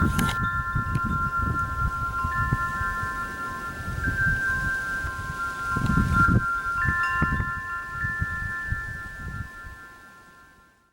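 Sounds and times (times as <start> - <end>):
wind noise on microphone: 0.0 - 10.8
metal wind chimes ringing: 0.0 - 10.9.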